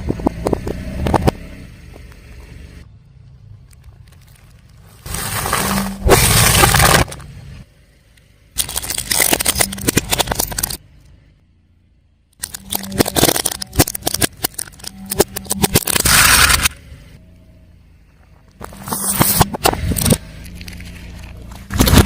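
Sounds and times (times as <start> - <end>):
low car engine hum: 0.0 - 22.0
tyre crushing crunchy objects: 3.8 - 7.3, 18.6 - 22.0.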